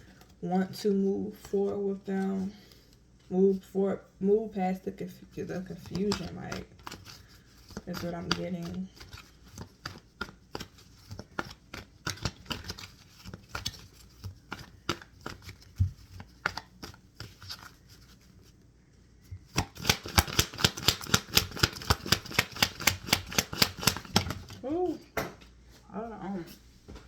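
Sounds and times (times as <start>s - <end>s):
cards clicking and flicking: 5.6s - 17.8s, 19.5s - 24.6s
cards shuffling taps: 5.6s - 18.2s, 19.4s - 24.6s.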